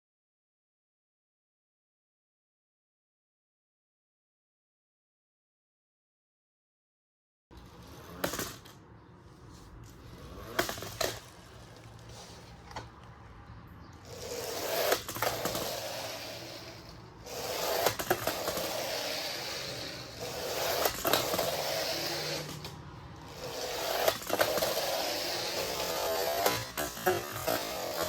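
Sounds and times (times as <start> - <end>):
plastic toy motor whirring: 7.6 - 8.8, 9.8 - 12.8, 14.0 - 28.0.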